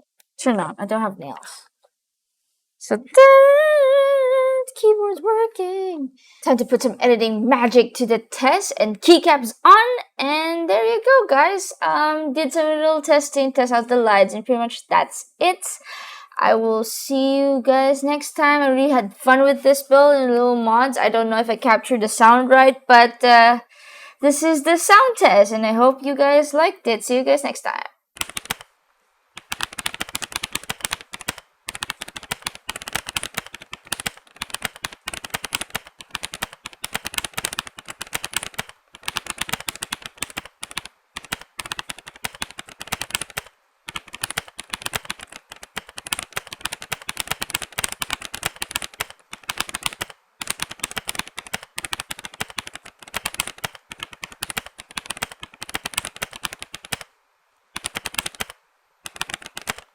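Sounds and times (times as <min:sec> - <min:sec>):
mechanical keyboard typing: 0:28.2 - 0:28.7, 0:29.4 - 0:57.1, 0:57.8 - 0:59.9.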